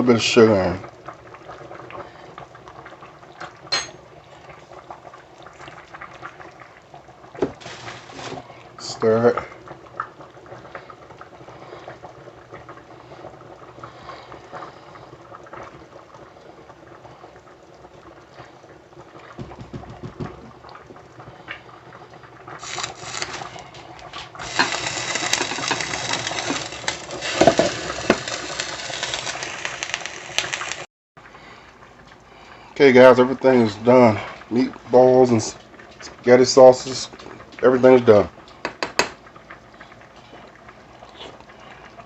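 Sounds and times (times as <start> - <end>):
pot bubbling at the boil: 0.0 - 42.0.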